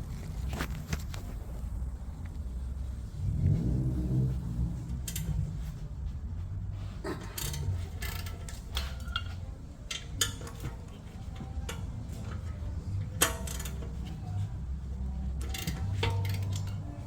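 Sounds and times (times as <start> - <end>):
steady low hum: 0.0 - 17.0
hand tools clinking on metal: 7.1 - 14.4, 15.4 - 17.0.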